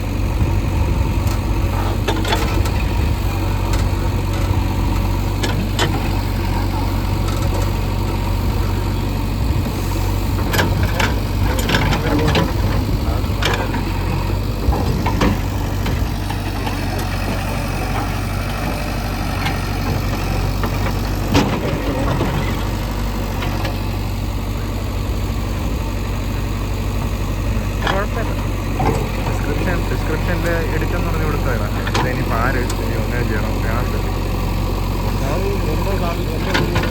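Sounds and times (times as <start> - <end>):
diesel engine running: 0.0 - 36.9
machine knocks and clanks: 0.4 - 8.8, 9.4 - 23.8.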